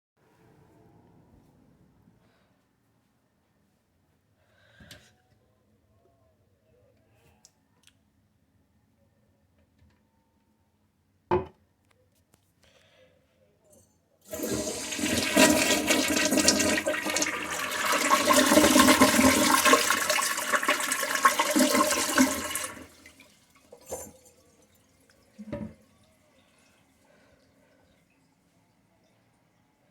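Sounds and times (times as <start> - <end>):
toilet flushing: 14.3 - 28.3.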